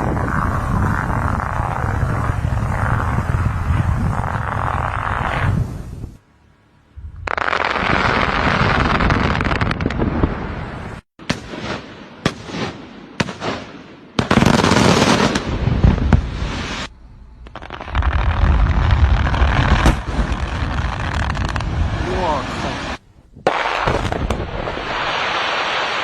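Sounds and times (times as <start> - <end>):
sharp detonation bangs: 11.2 - 25.7.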